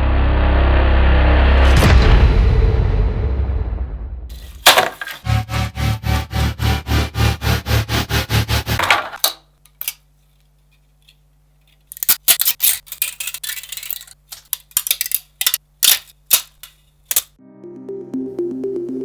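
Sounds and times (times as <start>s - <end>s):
rhythmic pulsing: 5.2s - 8.8s
plastic snapping and cracking: 11.8s - 17.4s.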